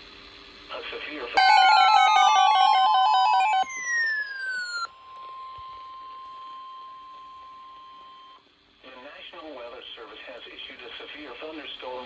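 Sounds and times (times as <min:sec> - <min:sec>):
falling electronic sweeps: 0:01.4 - 0:04.9
steady alarm tone: 0:01.4 - 0:04.9
warbling tone: 0:01.4 - 0:04.9.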